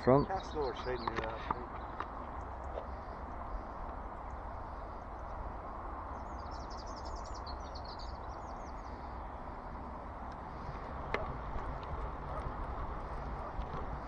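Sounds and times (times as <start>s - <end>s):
small bird singing: 0.0s - 9.5s.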